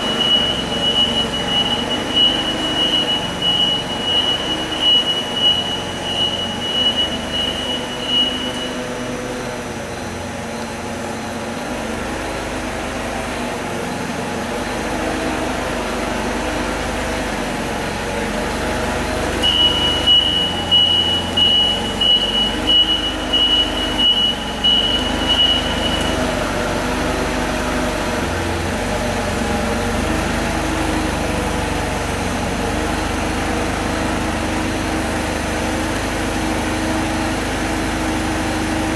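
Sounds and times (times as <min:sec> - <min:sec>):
high-pitched beeping alarm: 0:00.0 - 0:09.0, 0:19.4 - 0:26.4
engine running: 0:00.0 - 0:38.9.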